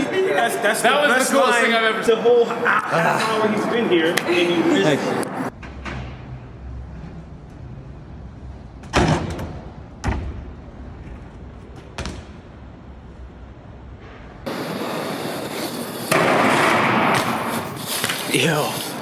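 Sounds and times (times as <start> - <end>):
bike hitting pavement thuds: 8.8 - 12.7.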